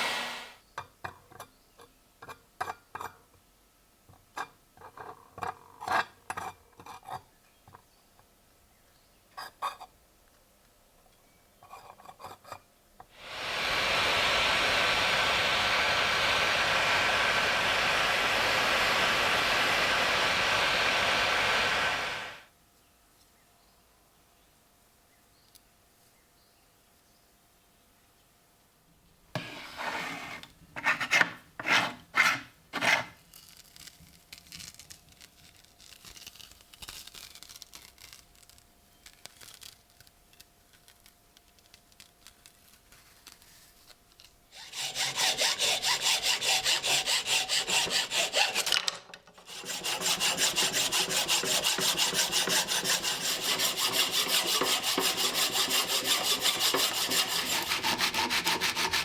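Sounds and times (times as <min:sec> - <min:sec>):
hand tool rasping strokes: 0:00.0 - 0:00.6, 0:44.6 - 0:59.0.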